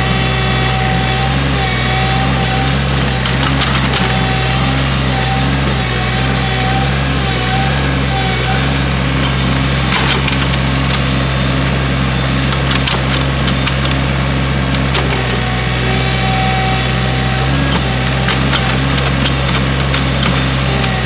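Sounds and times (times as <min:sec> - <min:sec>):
excavator engine running: 0:00.0 - 0:21.0
branches cracking and snapping: 0:14.7 - 0:21.0.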